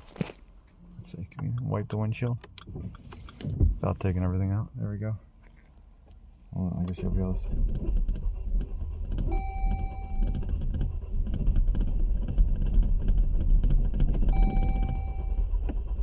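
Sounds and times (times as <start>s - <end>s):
engine cranking without starting: 6.9s - 16.0s.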